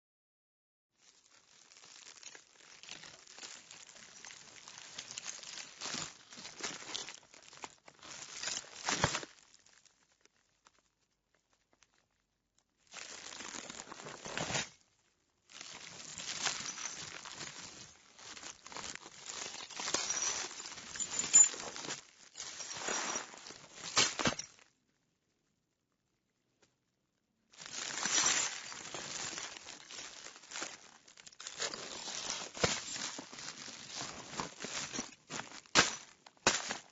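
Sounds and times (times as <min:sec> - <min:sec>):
broken glass crunching: 0:01.4 - 0:09.4, 0:15.6 - 0:24.6, 0:27.7 - 0:36.9.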